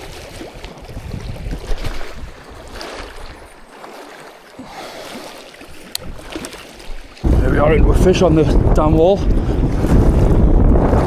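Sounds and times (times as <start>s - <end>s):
wind buffeting microphone: 0.0s - 3.6s, 6.9s - 11.0s
water lapping: 0.0s - 11.0s.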